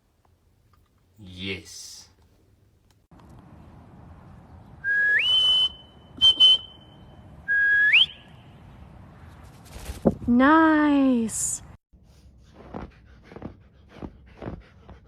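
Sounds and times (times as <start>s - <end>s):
rising whistles: 4.8s - 8.6s.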